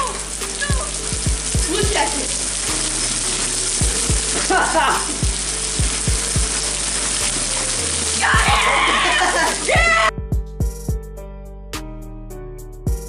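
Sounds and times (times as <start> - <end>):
rain hissing: 0.0 - 10.1
background music beat: 0.0 - 13.0.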